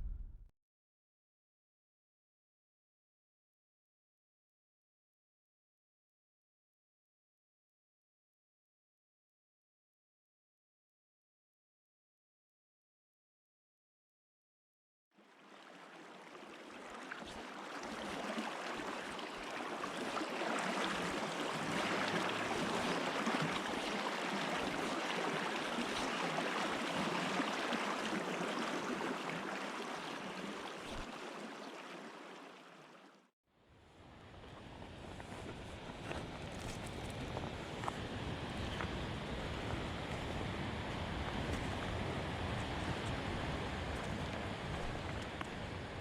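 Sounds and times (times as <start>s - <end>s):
low rumbling rush: 0.0s - 0.5s
rushing river water: 15.2s - 33.3s.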